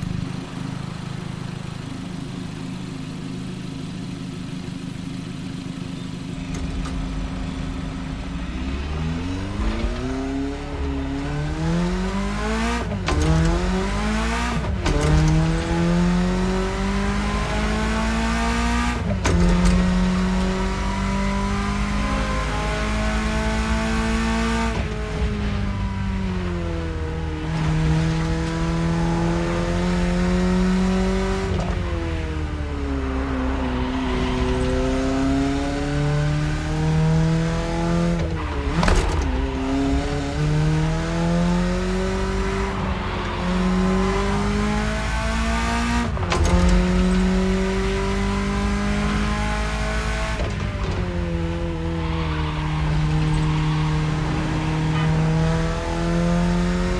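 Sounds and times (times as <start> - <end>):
car engine revving through gears: 6.4 - 56.9.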